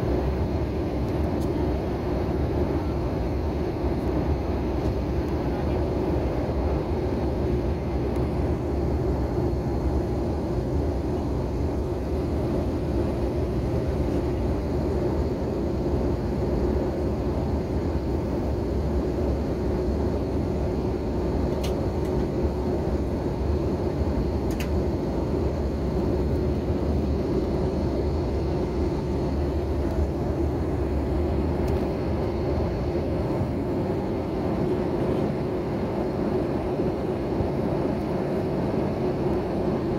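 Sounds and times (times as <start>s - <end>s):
jet engine drone in cabin: 0.0s - 39.9s.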